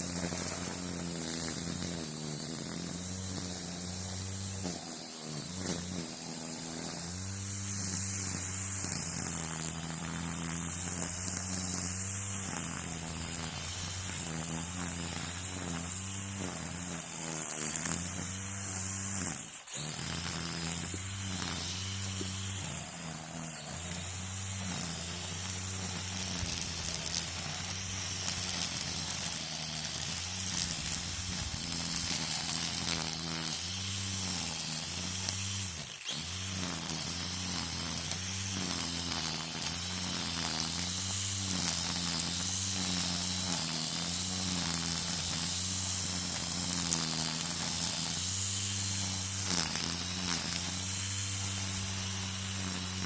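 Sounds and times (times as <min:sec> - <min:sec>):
string trimmer engine cutting: 0:00.0 - 0:53.0.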